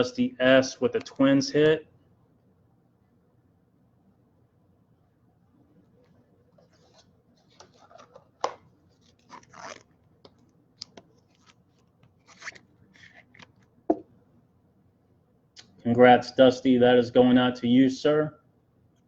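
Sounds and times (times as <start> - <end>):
cards rustling and sliding: 6.6 - 13.6.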